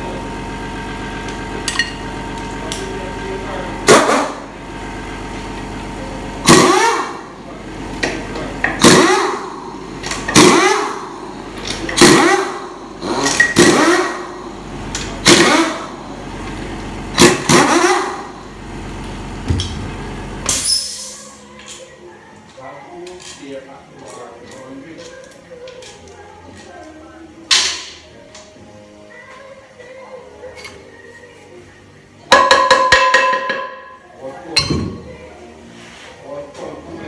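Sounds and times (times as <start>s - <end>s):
steady hum: 0.0s - 23.0s
power wrench spinning: 8.7s - 16.0s, 17.1s - 18.4s.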